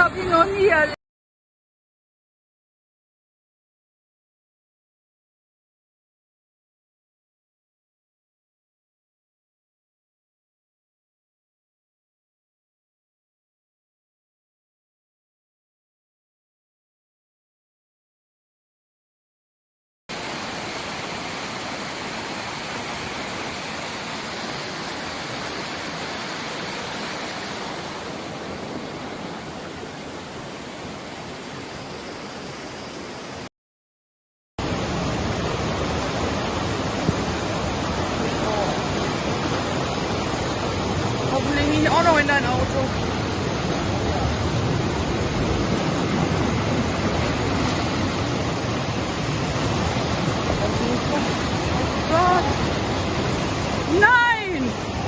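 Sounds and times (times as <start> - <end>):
floodwater rushing: 0.0 - 1.0, 20.1 - 33.5, 34.6 - 55.0.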